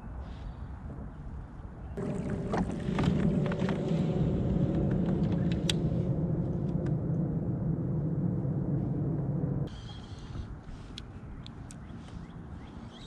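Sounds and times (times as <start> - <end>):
small motor droning: 2.0 - 10.4.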